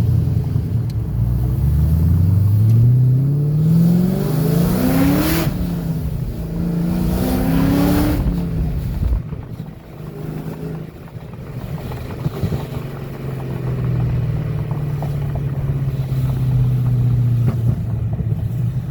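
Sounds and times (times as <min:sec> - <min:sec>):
car engine revving: 0:00.0 - 0:18.9
exhaust drone: 0:00.0 - 0:18.9.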